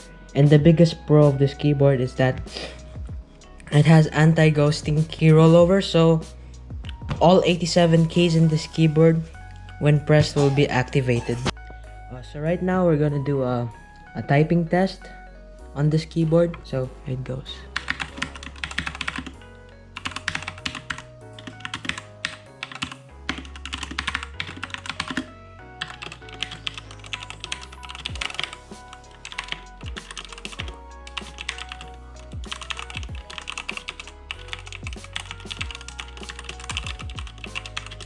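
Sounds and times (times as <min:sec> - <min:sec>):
background music: 0:00.0 - 0:38.0.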